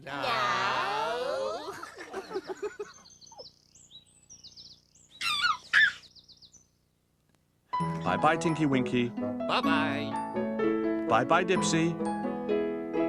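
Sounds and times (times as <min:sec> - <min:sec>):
birds chirping: 0:01.6 - 0:07.0
falling whistled bird calls: 0:02.1 - 0:06.7.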